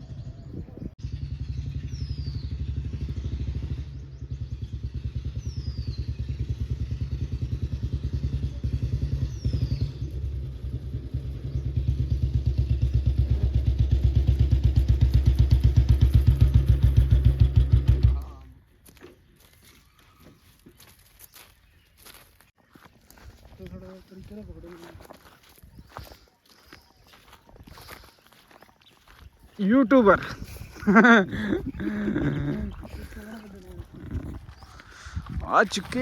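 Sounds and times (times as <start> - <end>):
motorcycle engine running: 0.0 - 18.5, 30.1 - 36.0.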